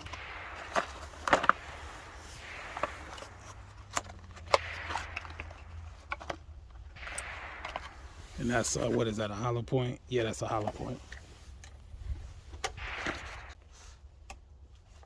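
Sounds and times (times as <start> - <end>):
rifle and ammunition clicks: 0.0 - 9.0.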